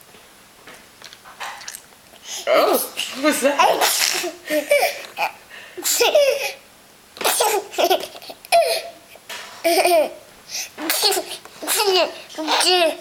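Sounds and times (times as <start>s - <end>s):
baby fake sneezing: 2.4s - 6.5s, 7.2s - 7.8s, 10.8s - 12.8s
baby laughing: 3.6s - 6.6s, 7.2s - 9.0s, 9.6s - 10.2s, 10.8s - 13.0s.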